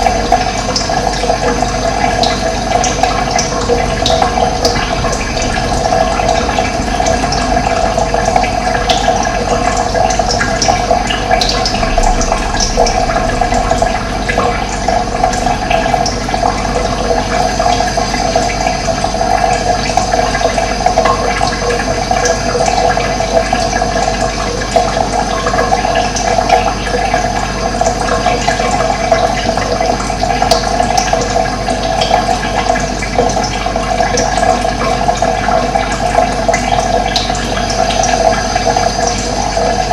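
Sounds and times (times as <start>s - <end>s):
water rushing: 0.0s - 29.6s.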